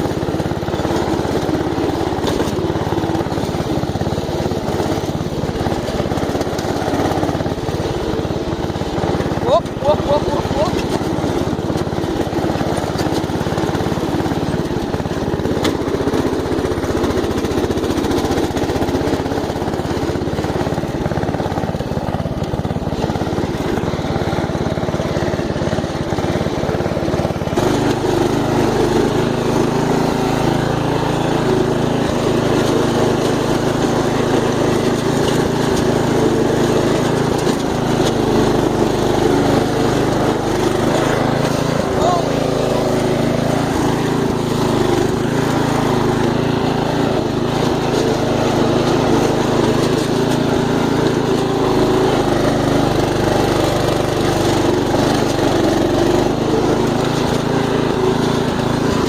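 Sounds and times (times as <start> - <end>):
riding lawn mower engine: 0.0 - 59.0.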